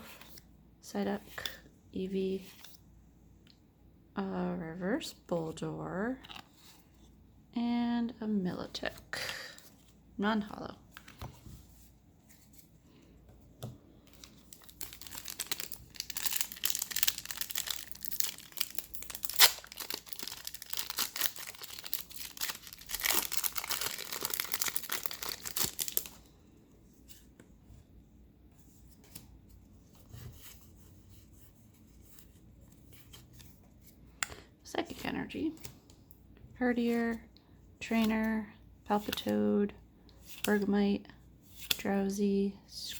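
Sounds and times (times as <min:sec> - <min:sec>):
foil wrapper tearing and crinkling: 0:14.1 - 0:26.2.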